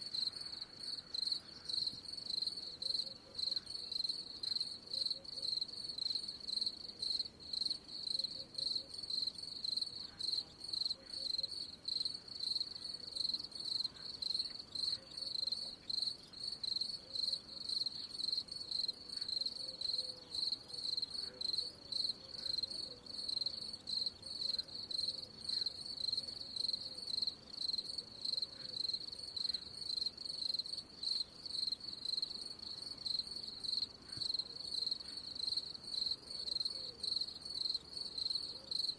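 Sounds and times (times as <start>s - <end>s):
cricket chirping: 0.0s - 38.9s.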